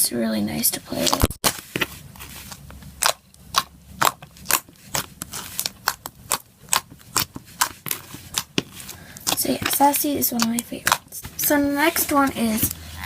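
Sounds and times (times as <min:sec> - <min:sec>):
slime clicking and popping: 0:03.0 - 0:08.6.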